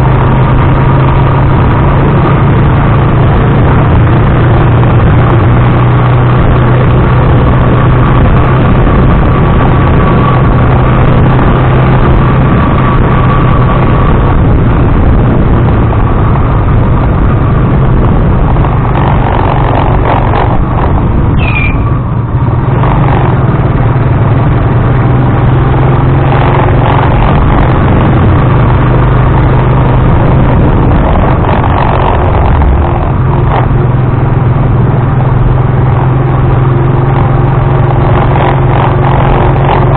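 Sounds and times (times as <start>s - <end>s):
engine droning: 0.0s - 39.9s
road and wind noise: 0.0s - 39.9s
high-pitched squeal: 18.4s - 23.6s.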